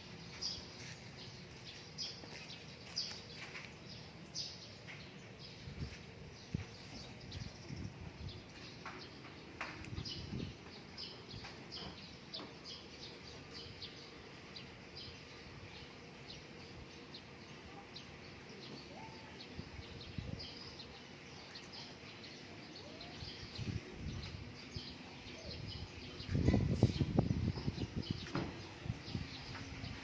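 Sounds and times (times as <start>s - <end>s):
faint steady background noise: 0.0s - 30.0s
small birds chirping: 0.0s - 30.0s
soft low thumps: 26.3s - 30.0s.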